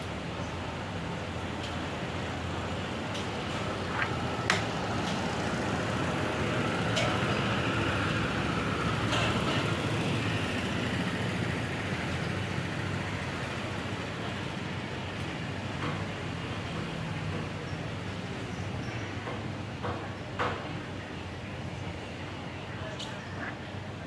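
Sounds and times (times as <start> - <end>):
road traffic rumble: 0.0 - 19.2.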